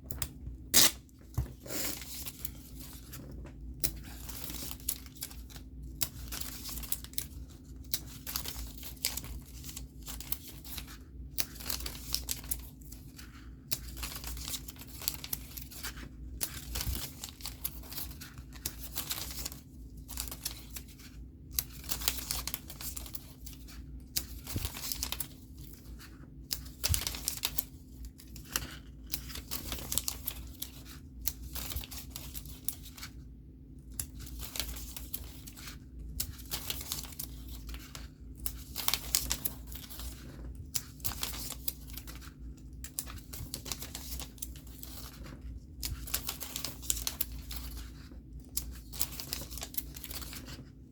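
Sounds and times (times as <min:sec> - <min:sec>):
stickers being peeled: 0:00.2 - 0:03.2
paper rustling: 0:00.8 - 0:33.2, 0:34.0 - 0:50.8.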